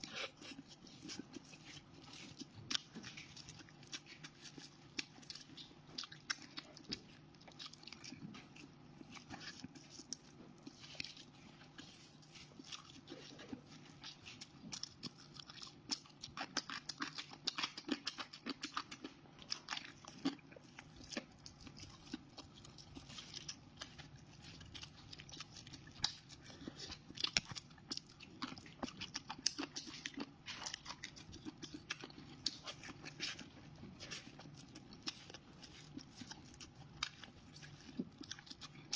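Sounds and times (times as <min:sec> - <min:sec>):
person chewing crunchy food: 0:00.0 - 0:38.9.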